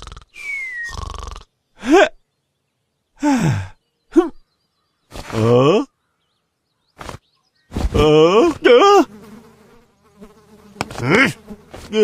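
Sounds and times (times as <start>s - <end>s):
cartoon character murmurs and cry: 0.0s - 2.2s, 3.2s - 4.5s, 5.1s - 6.0s, 7.8s - 9.1s, 10.9s - 12.0s.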